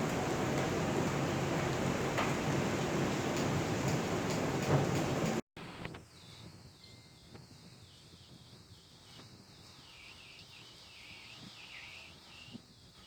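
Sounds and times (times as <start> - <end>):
insect chorus: 6.1 - 13.0.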